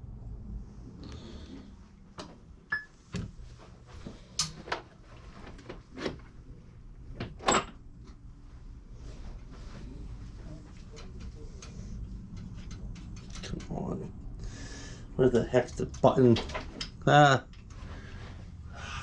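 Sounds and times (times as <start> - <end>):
low steady hum: 0.0 - 19.0
knocks and clicks of handled parts: 10.8 - 14.0.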